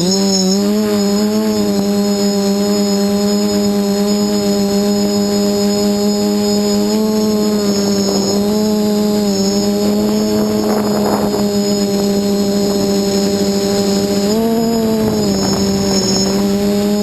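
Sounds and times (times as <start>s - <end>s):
drone motors buzzing: 0.0s - 17.0s
thin high whine: 4.4s - 17.0s.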